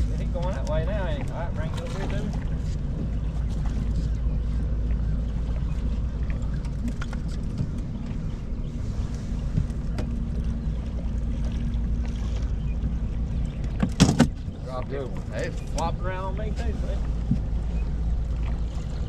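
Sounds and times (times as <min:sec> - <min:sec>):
rumble of wind and water: 0:00.0 - 0:19.0.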